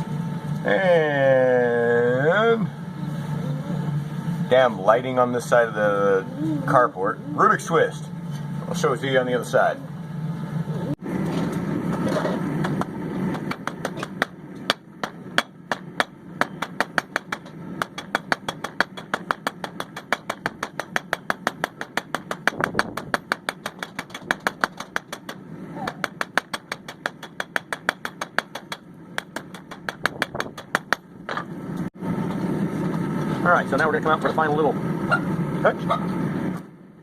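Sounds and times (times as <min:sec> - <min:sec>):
hammer striking steel on anvil: 0:12.6 - 0:31.4.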